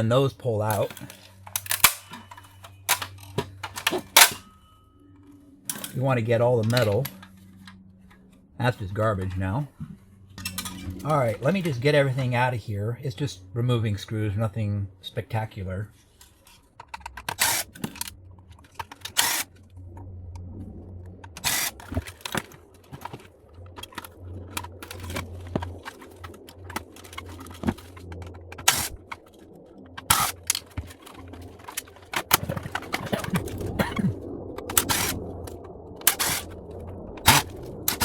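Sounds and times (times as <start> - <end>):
plastic and metal parts clattering: 0.6 - 6.0, 6.6 - 8.1, 9.7 - 12.3, 16.0 - 19.6, 21.2 - 29.3, 29.9 - 34.0, 34.6 - 35.2, 36.0 - 36.6, 37.2 - 38.0
sharp plastic clacks: 0.7 - 4.5, 16.2 - 19.5, 21.2 - 29.3, 29.9 - 33.7, 34.6 - 36.6, 37.2 - 38.0.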